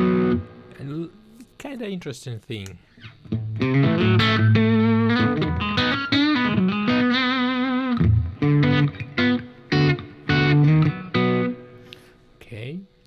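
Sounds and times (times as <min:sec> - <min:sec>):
electric guitar with wavering shimmer: 0:00.0 - 0:00.8, 0:03.0 - 0:12.2.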